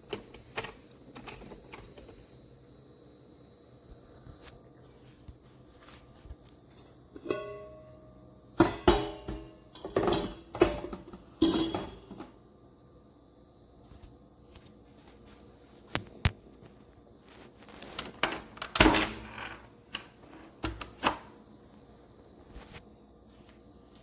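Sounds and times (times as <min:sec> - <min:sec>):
objects knocking and clunking: 0:00.0 - 0:02.2, 0:08.6 - 0:12.4.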